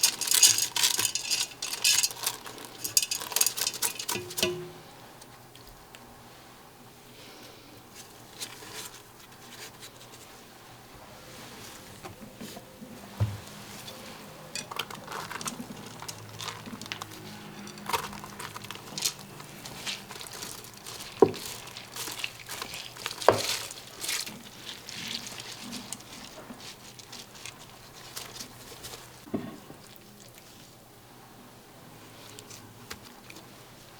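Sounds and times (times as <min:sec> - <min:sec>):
soft scraping and rustling: 0:00.0 - 0:04.7, 0:07.3 - 0:30.8
utensils clinking on dishes and pans: 0:00.0 - 0:04.8, 0:13.6 - 0:29.1.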